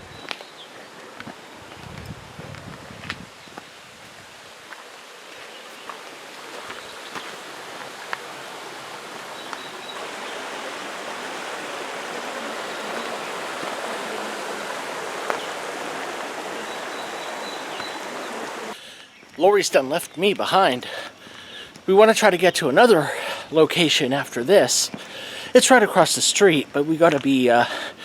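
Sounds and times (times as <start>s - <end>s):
stream water rushing: 3.6s - 18.8s.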